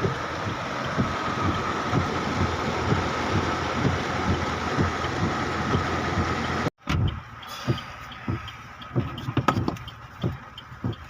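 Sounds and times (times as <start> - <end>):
floodwater rushing: 0.0 - 6.4
low thumps: 0.0 - 11.0.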